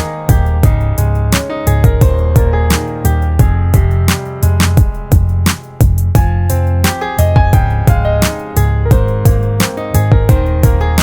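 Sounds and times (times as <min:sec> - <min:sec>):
bass line: 0:00.0 - 0:11.0
drum beat: 0:03.4 - 0:08.2, 0:08.9 - 0:10.9.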